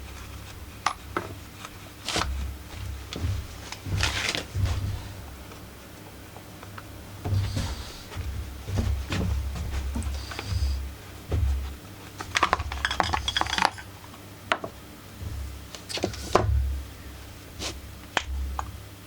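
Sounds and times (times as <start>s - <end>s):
chainsaw parts clicking and rattling: 12.2s - 13.9s.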